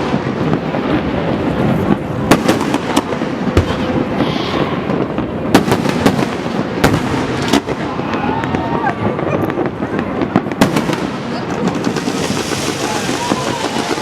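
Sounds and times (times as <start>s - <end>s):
fireworks bangs: 0.0s - 14.0s
crackle of bursting shells: 11.6s - 14.0s.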